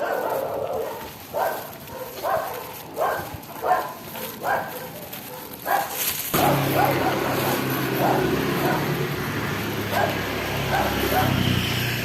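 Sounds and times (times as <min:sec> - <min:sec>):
dogs barking: 0:00.0 - 0:12.0
motor engine humming: 0:06.3 - 0:12.0.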